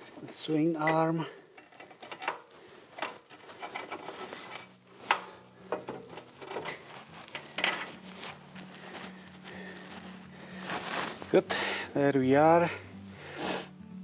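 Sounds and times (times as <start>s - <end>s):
metal motorcycle parts clanking: 0.0s - 8.0s.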